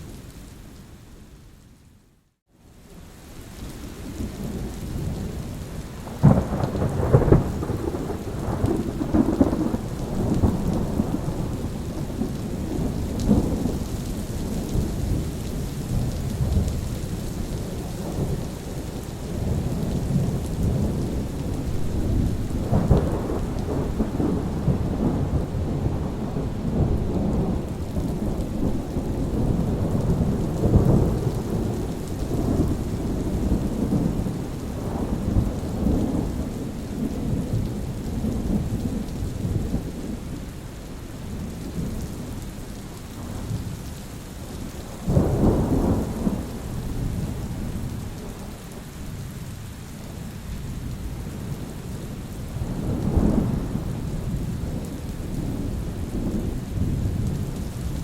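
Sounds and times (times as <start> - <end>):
steady rain: 0.0 - 58.0
thunder rumbling: 4.5 - 40.4, 44.4 - 48.6, 50.8 - 58.0
thunder clap: 19.6 - 36.5.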